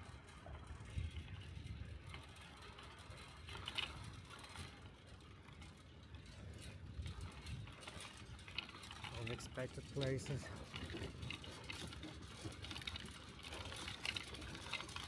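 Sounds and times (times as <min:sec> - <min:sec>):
bike clicks and rattles: 0:00.0 - 0:15.0
wind and rolling tyres: 0:00.0 - 0:15.0.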